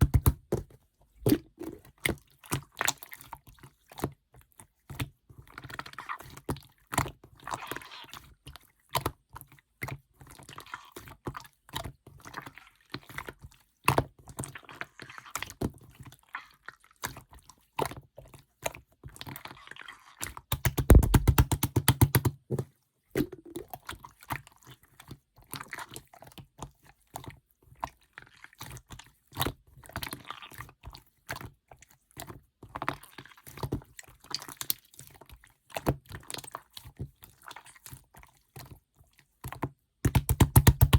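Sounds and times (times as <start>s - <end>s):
slime popping: 0.0s - 0.4s, 20.5s - 22.3s, 40.1s - 40.9s
slime squishing by hand: 0.0s - 0.6s, 20.5s - 22.4s, 40.1s - 40.9s.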